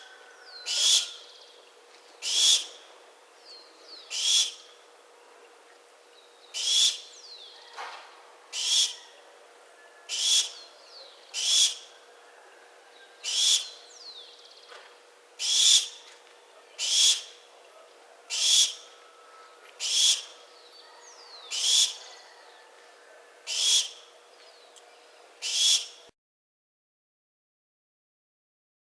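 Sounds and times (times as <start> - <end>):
barn owl screeching: 0.0 - 1.3, 4.1 - 4.6, 6.6 - 7.1, 8.5 - 9.2, 10.0 - 11.9, 13.2 - 13.8, 15.4 - 16.0, 16.8 - 17.4, 18.3 - 24.1, 25.4 - 26.0.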